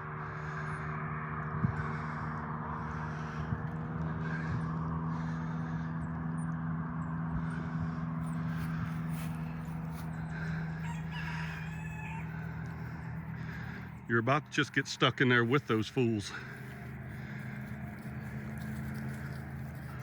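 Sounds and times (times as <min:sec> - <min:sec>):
engine humming: 0:00.0 - 0:20.0
chicken call: 0:10.8 - 0:12.7.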